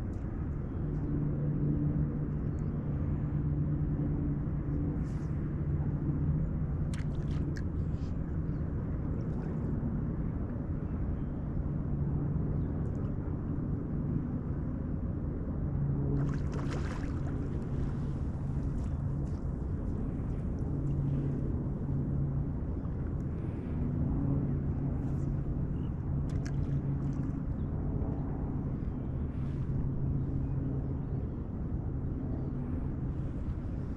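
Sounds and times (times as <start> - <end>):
wind rumble on microphone: 0.0 - 33.9
boat motor running: 16.0 - 28.2.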